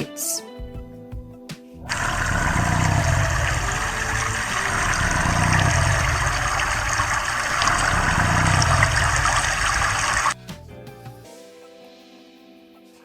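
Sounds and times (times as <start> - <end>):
loud water-like rushing: 1.8 - 10.4
low rumble: 1.8 - 10.4.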